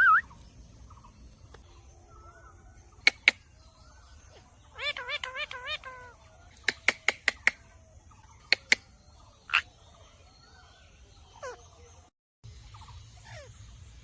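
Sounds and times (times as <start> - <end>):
parrot chirping and squawking: 4.7 - 7.1, 9.4 - 9.7.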